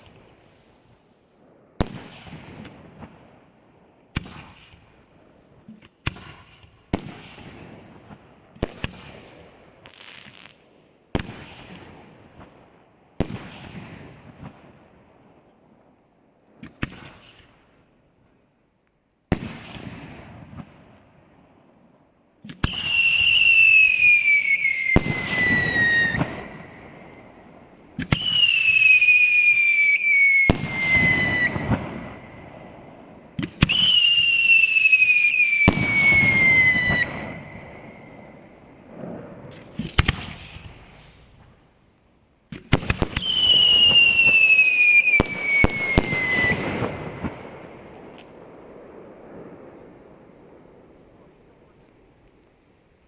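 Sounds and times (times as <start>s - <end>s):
fireworks bursting with bangs: 0.0s - 15.9s, 16.5s - 17.8s, 19.3s - 41.8s, 42.5s - 52.6s
falling fireworks whistles: 9.8s - 11.9s, 22.5s - 41.6s, 42.7s - 49.7s.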